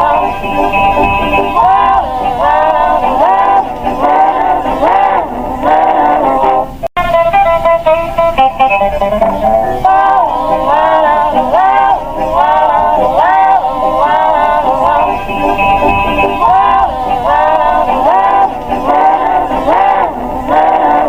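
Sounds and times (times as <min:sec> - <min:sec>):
wailing electronic alarm tone: 0:00.0 - 0:05.1, 0:09.2 - 0:20.9.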